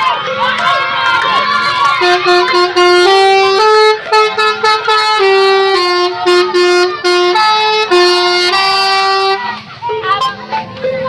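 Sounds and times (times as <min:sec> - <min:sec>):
multi-tone musical horn playing tune: 0:01.8 - 0:10.4.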